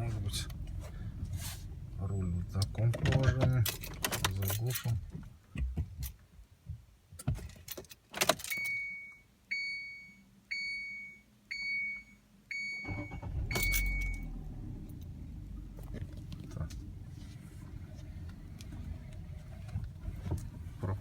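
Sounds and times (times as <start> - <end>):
ignition clicks: 2.4 - 4.6, 12.6 - 17.0
keys rattling: 3.5 - 5.0
car warning chime beeps: 8.5 - 14.4.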